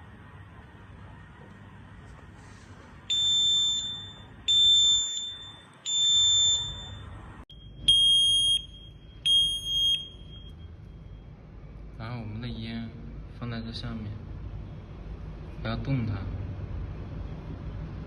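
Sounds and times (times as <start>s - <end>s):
smoke detector beeping: 3.1s - 11.1s.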